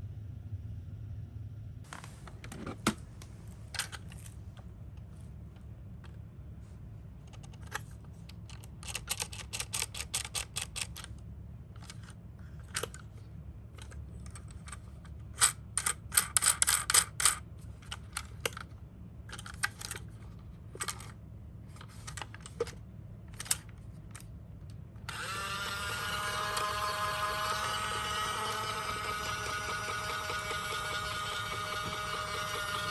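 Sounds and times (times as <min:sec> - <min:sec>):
plastic toy cars clicking and rattling: 0:03.7 - 0:04.4, 0:07.2 - 0:13.2, 0:13.8 - 0:24.4, 0:25.0 - 0:32.9
steady electronic toy tone: 0:25.1 - 0:32.9.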